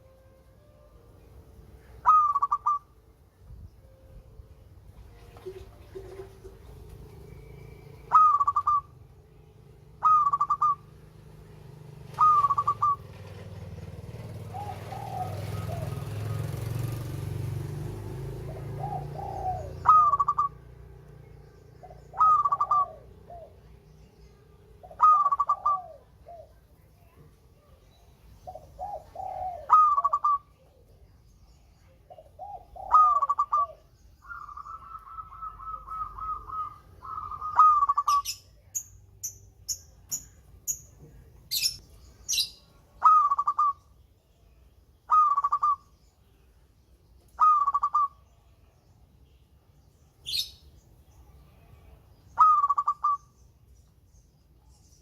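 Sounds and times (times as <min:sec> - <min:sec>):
small bird high chirps: 0:01.8 - 0:03.8, 0:06.6 - 0:11.1, 0:11.7 - 0:13.1, 0:18.6 - 0:55.0
dove cooing: 0:01.9 - 0:02.9, 0:05.4 - 0:09.0, 0:09.9 - 0:11.2, 0:12.0 - 0:17.3, 0:18.2 - 0:20.7, 0:21.8 - 0:23.8, 0:24.8 - 0:26.7, 0:28.4 - 0:31.0, 0:32.0 - 0:38.4, 0:41.5 - 0:43.9, 0:45.1 - 0:45.9, 0:47.4 - 0:48.2, 0:52.4 - 0:53.3.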